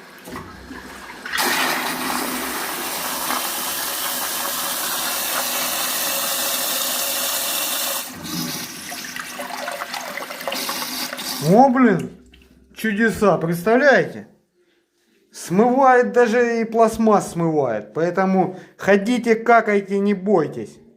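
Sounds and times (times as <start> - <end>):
toilet flushing: 0.0 - 11.7
water running: 0.0 - 13.2.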